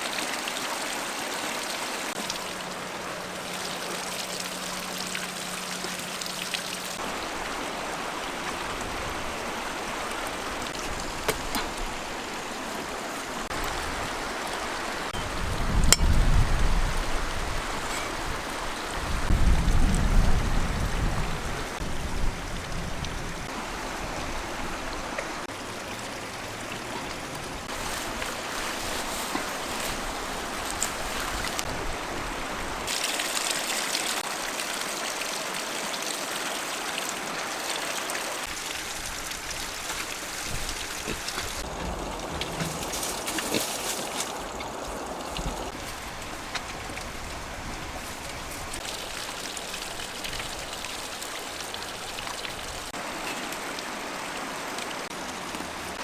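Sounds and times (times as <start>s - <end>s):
water running: 0.0s - 56.0s
low rumbles: 40.5s - 45.8s.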